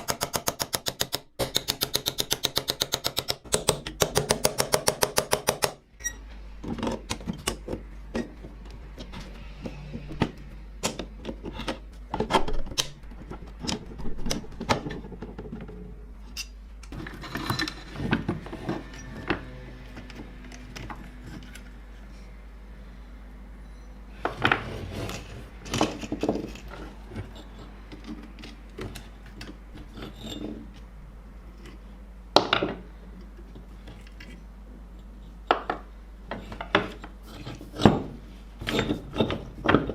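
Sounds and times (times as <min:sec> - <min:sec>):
sharp clicks and knocks: 0:00.0 - 0:05.8.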